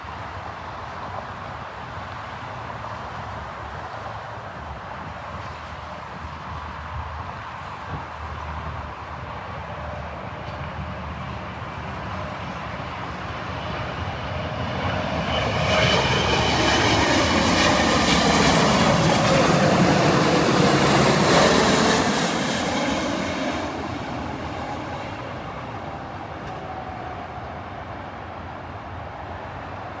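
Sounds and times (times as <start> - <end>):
jet engines passing close: 0.1 - 30.0.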